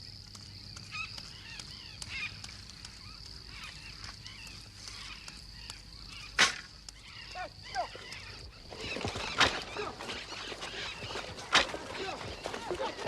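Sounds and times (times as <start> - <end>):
animal and bird calls: 0.5 - 13.0
sharp cracks: 5.2 - 7.0, 8.1 - 13.0.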